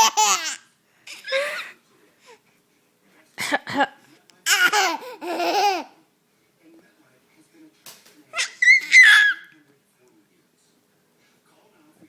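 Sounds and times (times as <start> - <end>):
baby laughing: 0.0 - 0.6, 4.4 - 6.0, 8.3 - 9.5.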